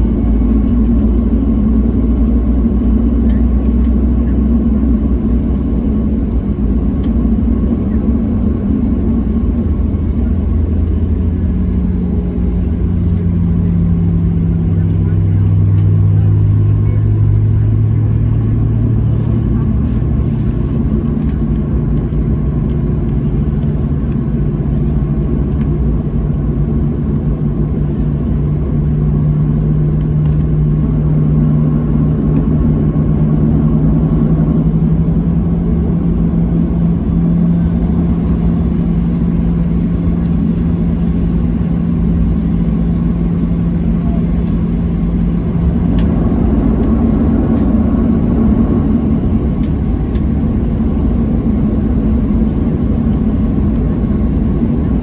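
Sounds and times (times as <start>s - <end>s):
jet engines rumbling: 0.0s - 55.0s.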